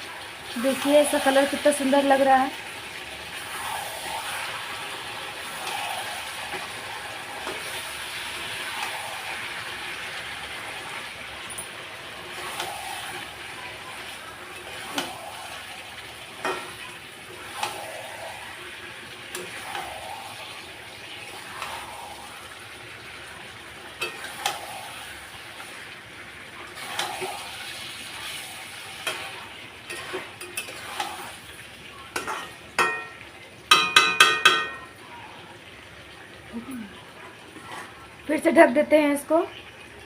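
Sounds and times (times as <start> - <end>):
curry sizzling in a pan: 0.0 - 40.0
spoon stirring and scraping: 24.0 - 25.0, 26.8 - 31.4, 32.1 - 34.9, 37.4 - 38.1.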